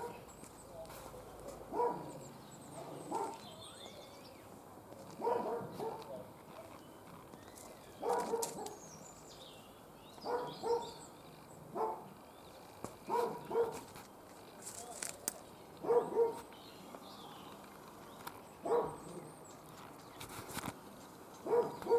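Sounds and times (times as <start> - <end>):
birds chirping: 0.0 - 21.9
animal barking and yelping: 1.7 - 3.4, 13.1 - 13.8, 15.8 - 16.5, 21.4 - 21.9.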